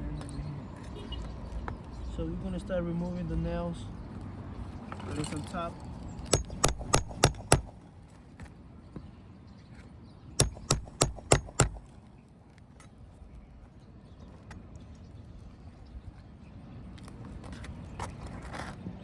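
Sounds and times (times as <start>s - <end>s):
sharp hammer strikes: 6.3s - 7.8s, 10.4s - 11.9s.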